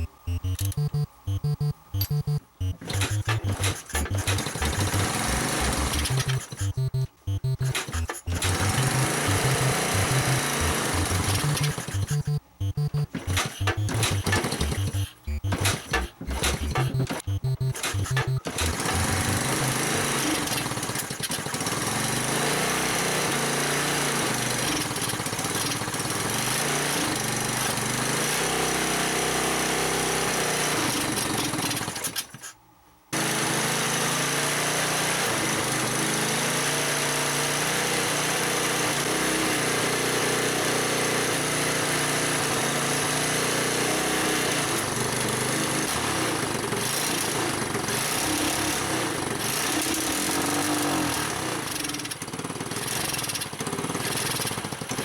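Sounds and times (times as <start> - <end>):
engine running unevenly: 0.0 - 20.2.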